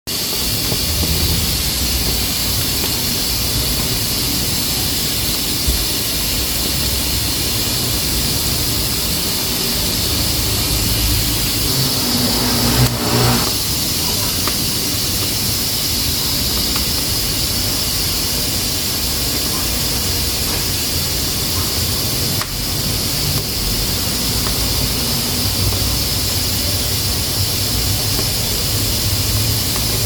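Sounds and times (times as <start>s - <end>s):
pressure cooker hissing steam: 0.1s - 10.4s
low rumble: 11.3s - 13.6s.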